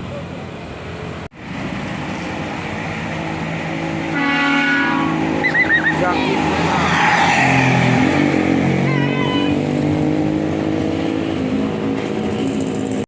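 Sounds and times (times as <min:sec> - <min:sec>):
bus engine: 0:00.0 - 0:13.0
road noise: 0:00.0 - 0:13.0
multi-tone musical horn chord: 0:04.1 - 0:05.3.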